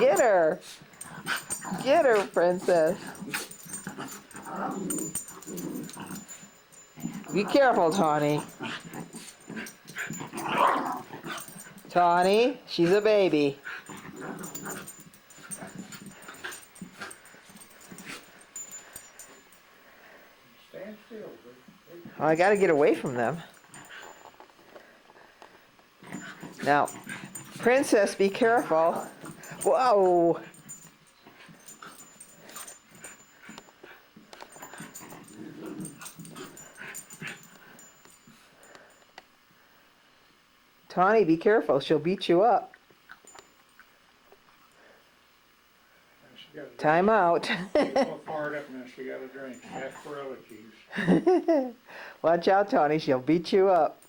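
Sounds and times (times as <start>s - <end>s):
dogs play-fighting: 0.0s - 20.3s, 22.0s - 39.1s, 47.1s - 50.2s.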